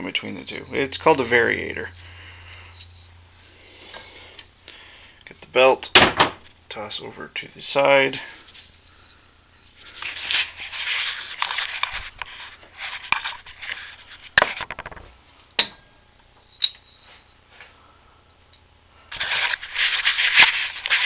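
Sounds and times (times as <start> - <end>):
scraping and rustling: 9.8 - 15.0, 19.1 - 21.0.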